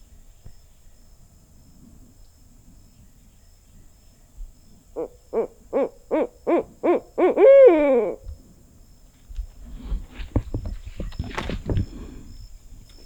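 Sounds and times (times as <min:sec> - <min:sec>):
owl hooting: 0:05.0 - 0:08.3.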